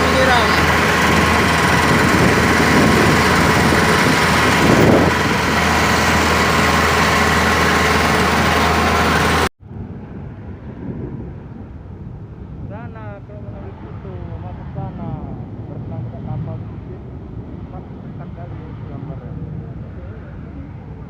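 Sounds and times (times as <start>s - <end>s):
engine humming with whine: 0.0s - 12.6s.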